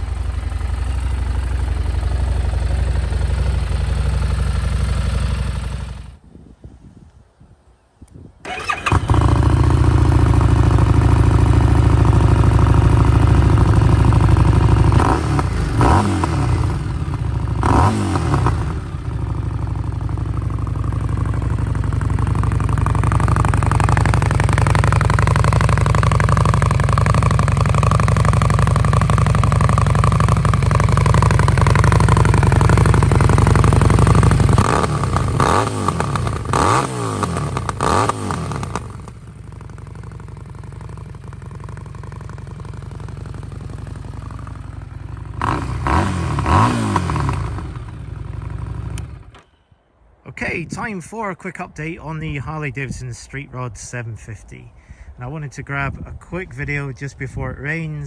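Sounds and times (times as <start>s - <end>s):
motorcycle engine idling and revving: 0.0s - 6.2s, 8.4s - 49.9s.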